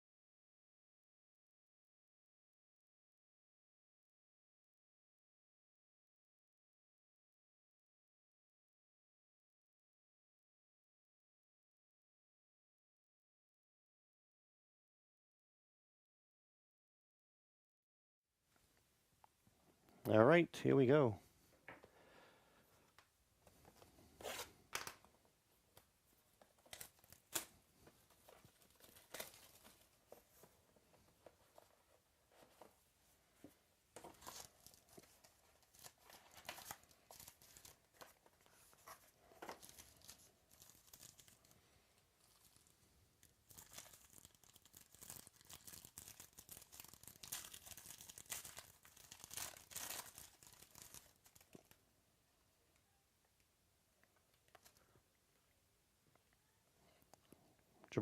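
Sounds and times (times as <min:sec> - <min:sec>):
packaging crackles and clicks: 0:25.8 - 0:29.9, 0:34.0 - 0:41.6, 0:42.2 - 0:51.8
wrapping tearing and crinkling: 0:26.4 - 0:30.5, 0:34.0 - 0:51.8.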